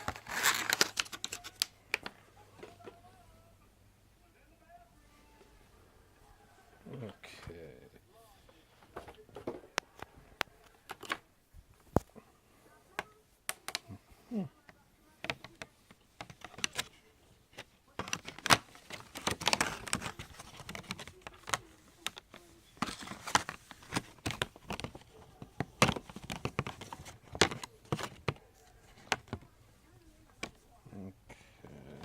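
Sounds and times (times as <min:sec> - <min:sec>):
plastic crinkling and rustling: 0:00.0 - 0:03.0, 0:15.2 - 0:29.6
clicks and knocks of packaging: 0:15.2 - 0:16.9, 0:17.5 - 0:29.5.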